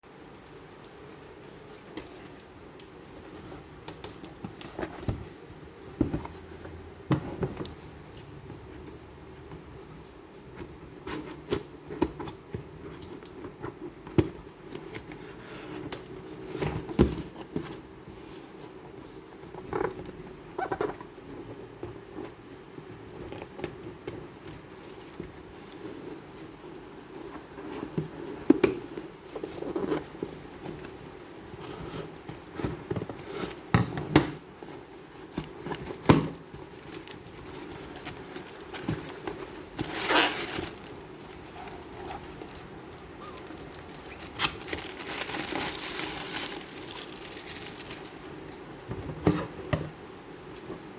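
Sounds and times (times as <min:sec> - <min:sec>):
packaging rustling: 0:34.6 - 0:48.8.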